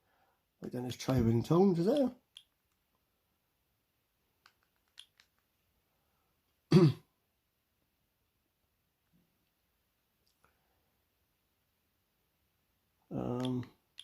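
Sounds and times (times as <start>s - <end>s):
man clearing throat: 6.7s - 7.1s.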